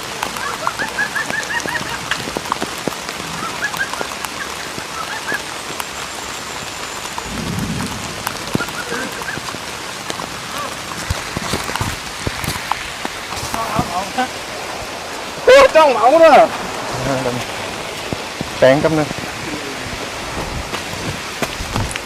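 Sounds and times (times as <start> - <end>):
steady rain: 0.0 - 22.0
low rumble: 7.3 - 8.7.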